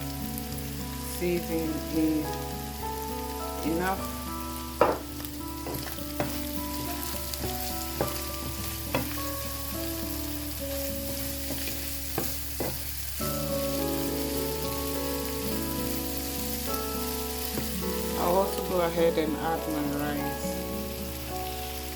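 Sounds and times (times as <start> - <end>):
food sizzling in a frying pan: 0.0 - 21.9
utensil knocking against pan: 4.8 - 6.5, 7.4 - 9.3, 11.2 - 12.9.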